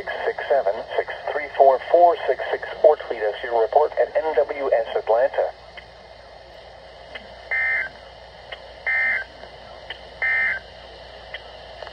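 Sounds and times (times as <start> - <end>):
radio receiver hiss: 0.0 - 11.9.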